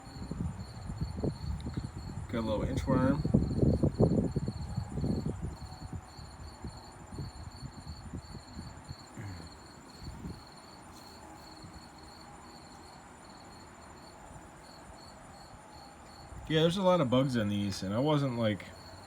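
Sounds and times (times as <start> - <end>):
crickets chirping: 0.0 - 19.0.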